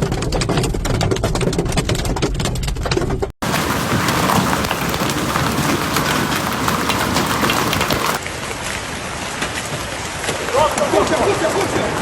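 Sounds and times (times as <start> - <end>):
hailstones rattling on hard surfaces: 3.4 - 8.2.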